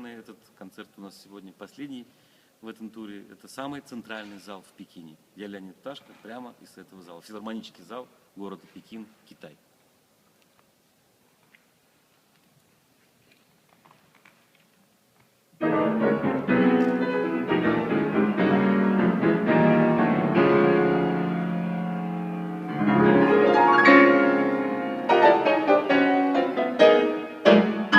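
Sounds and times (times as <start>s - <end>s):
piano playing chords and melody: 15.6s - 27.9s.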